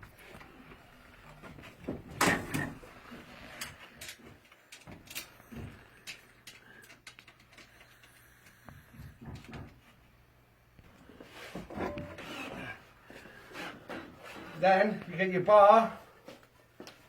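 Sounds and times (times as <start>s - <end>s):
clatter of bed frame parts: 0.4s - 8.2s, 8.8s - 10.0s, 11.4s - 12.8s
bed frame parts knocking and rattling: 0.8s - 7.7s, 8.8s - 10.0s, 11.6s - 12.4s.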